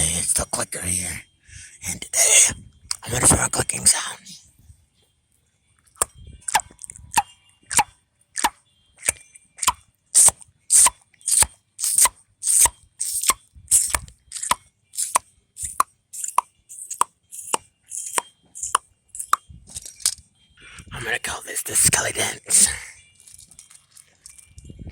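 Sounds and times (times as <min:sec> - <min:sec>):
sharp ringing clicks: 0:13.9 - 0:20.4.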